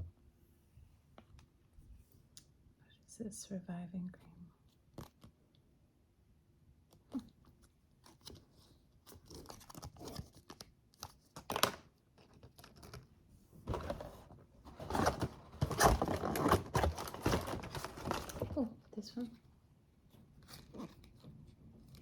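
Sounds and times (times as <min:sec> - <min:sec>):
packaging clicks and rustles: 0:09.1 - 0:13.1, 0:13.7 - 0:18.7
packaging tearing and crinkling: 0:14.8 - 0:18.6.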